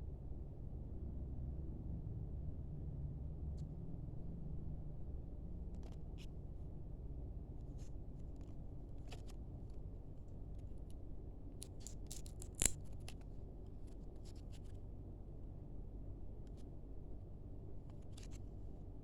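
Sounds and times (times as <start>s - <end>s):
card pack crinkling and clicks: 11.6s - 13.2s.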